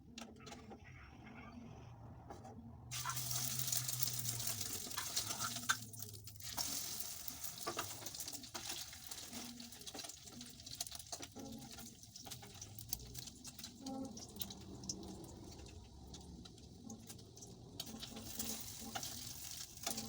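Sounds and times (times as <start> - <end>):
food sizzling in hot oil: 2.9 - 15.8, 17.1 - 20.0.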